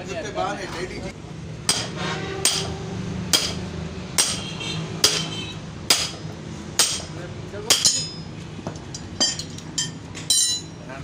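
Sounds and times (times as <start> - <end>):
hammer striking metal: 1.7 - 3.6, 4.2 - 10.8.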